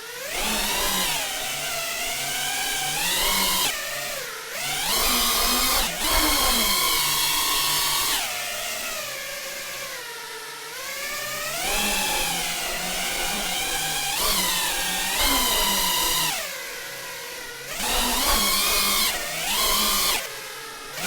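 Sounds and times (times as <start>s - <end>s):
drone motors whining: 11.7s - 16.5s, 17.7s - 21.0s.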